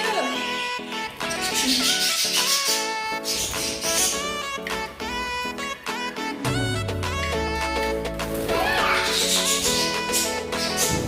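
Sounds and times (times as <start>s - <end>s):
high shaker rhythm: 6.5s - 11.0s.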